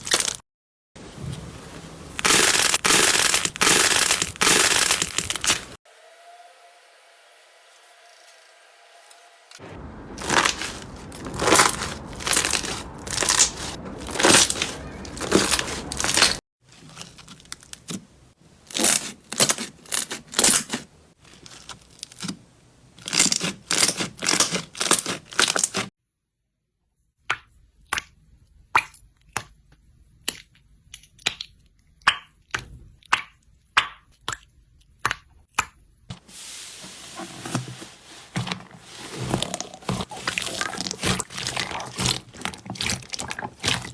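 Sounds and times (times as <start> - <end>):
slime being squeezed: 39.2 - 43.9.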